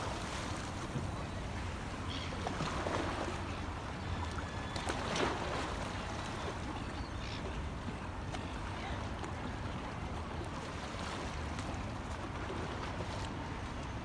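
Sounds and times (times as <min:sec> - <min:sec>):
small waves washing on beach: 0:00.0 - 0:09.3.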